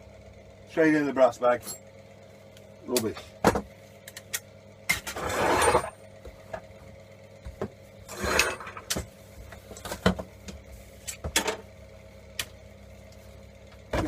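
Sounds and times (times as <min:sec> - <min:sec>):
extraction fan humming: 0:00.0 - 0:14.0
metal parts clattering: 0:05.0 - 0:06.0
metal scraping: 0:05.0 - 0:06.0.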